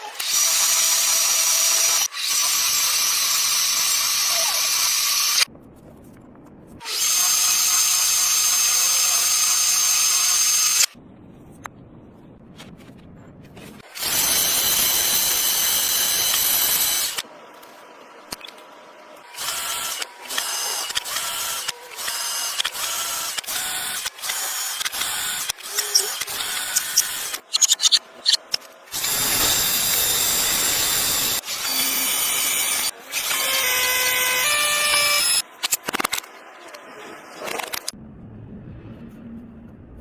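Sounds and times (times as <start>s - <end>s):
power tool whining: 19.3s - 35.4s.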